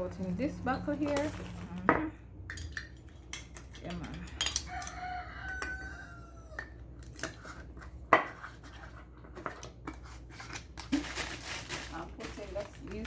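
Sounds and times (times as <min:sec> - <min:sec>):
rooster crowing: 0:04.6 - 0:06.8.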